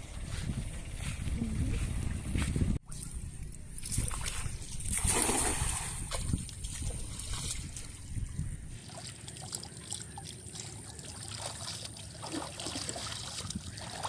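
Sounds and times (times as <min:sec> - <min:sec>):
water trickling: 0:06.3 - 0:14.0.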